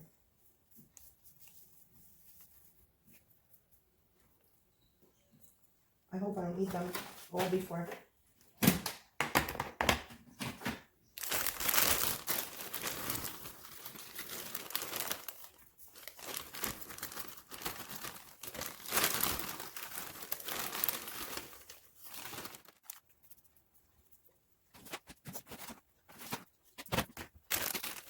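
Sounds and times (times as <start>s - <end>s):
plastic packaging crinkling: 11.2s - 23.5s, 24.7s - 28.0s.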